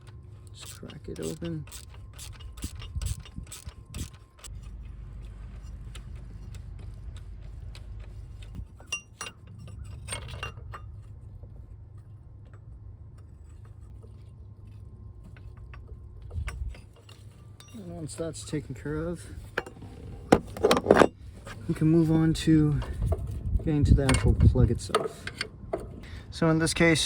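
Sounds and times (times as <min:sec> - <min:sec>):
low steady hum: 0:00.0 - 0:27.0
ratchet clicks: 0:00.5 - 0:04.6
metal tools clinking: 0:08.8 - 0:11.1, 0:16.3 - 0:18.8.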